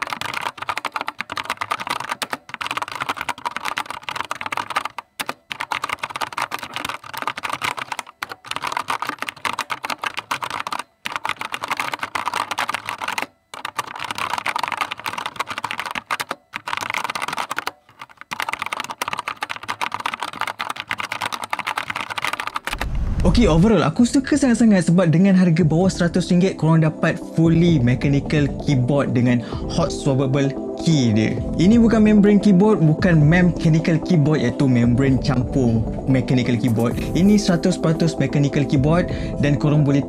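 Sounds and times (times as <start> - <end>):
mechanical keyboard typing: 0.0 - 23.8, 36.1 - 40.0.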